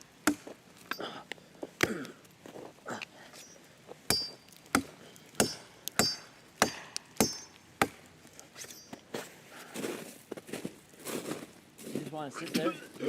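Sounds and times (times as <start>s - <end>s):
axe chopping wood: 0.2s - 1.2s, 1.8s - 2.1s, 4.1s - 8.1s.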